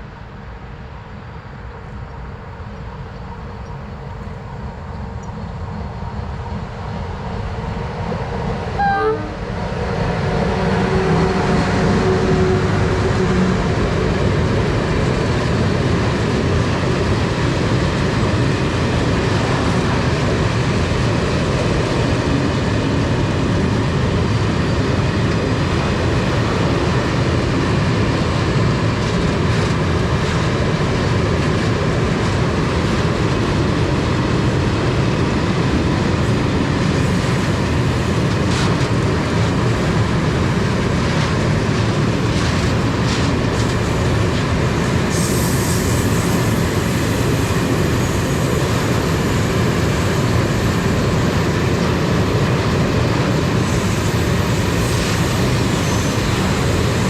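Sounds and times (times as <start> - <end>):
train wheels rumbling on rails: 0.0 - 57.0
train horn blast: 8.7 - 9.6, 10.2 - 13.6.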